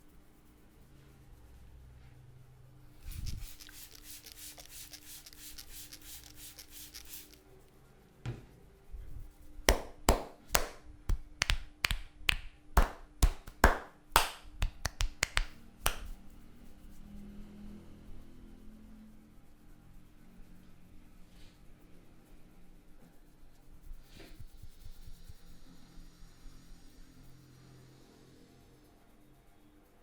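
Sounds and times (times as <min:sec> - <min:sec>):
hair rubbed between fingers: 0:02.9 - 0:07.4, 0:09.0 - 0:17.4
hand taps on head: 0:09.7 - 0:16.2.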